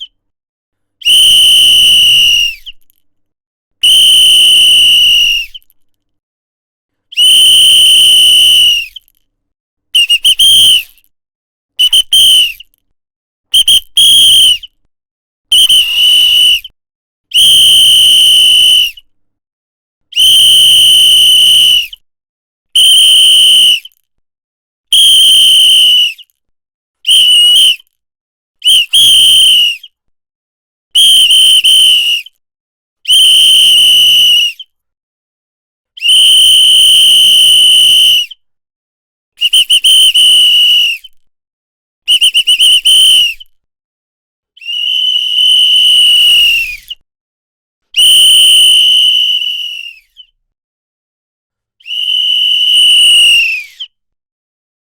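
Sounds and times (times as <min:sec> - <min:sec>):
shrill whistle blasts: 0:01.0 - 0:02.8, 0:03.8 - 0:05.7, 0:07.1 - 0:09.1, 0:10.0 - 0:11.1, 0:11.8 - 0:12.7, 0:13.5 - 0:14.8, 0:15.5 - 0:16.7, 0:17.3 - 0:19.1, 0:20.1 - 0:22.0, 0:22.8 - 0:24.0, 0:24.9 - 0:26.3, 0:27.0 - 0:27.9, 0:28.6 - 0:30.0, 0:31.0 - 0:32.4, 0:33.0 - 0:34.7, 0:36.0 - 0:38.4, 0:39.4 - 0:41.2, 0:42.1 - 0:43.6, 0:44.6 - 0:47.0, 0:47.9 - 0:50.3, 0:51.8 - 0:54.0.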